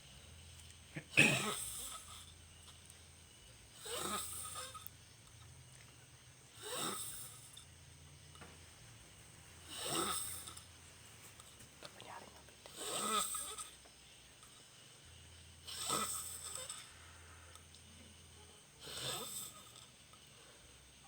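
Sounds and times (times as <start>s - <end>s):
person snoring: 1.0s - 2.2s, 6.5s - 7.6s, 9.6s - 10.7s, 12.7s - 13.8s, 15.6s - 17.1s, 18.8s - 19.9s.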